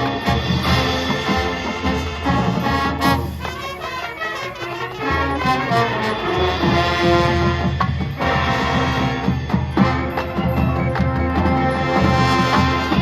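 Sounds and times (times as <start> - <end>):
brass sustained chords: 0.0 - 10.4, 11.5 - 13.0.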